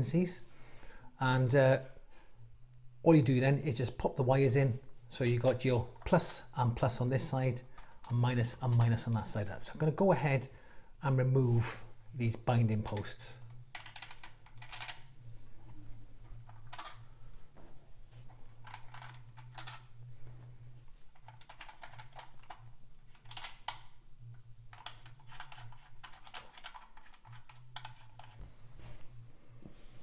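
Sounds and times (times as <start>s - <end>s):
small metallic clicks and rattles: 13.7s - 15.1s, 18.6s - 19.9s, 21.1s - 23.9s, 24.7s - 28.4s.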